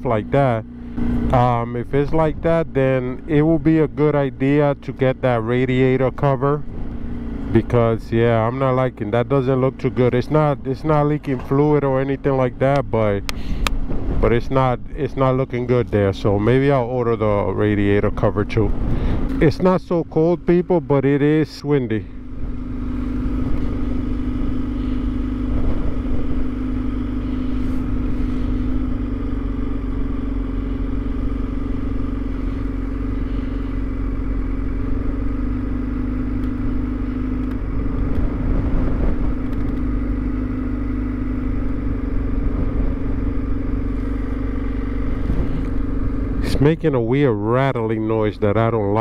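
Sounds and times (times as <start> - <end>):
motorcycle engine idling: 0.0 - 49.0
rattling noise: 37.3 - 40.1.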